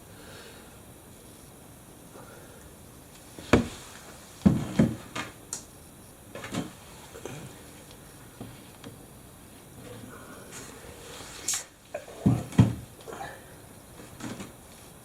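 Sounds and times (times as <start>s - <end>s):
objects knocking and clunking: 4.4s - 5.4s, 12.0s - 12.9s.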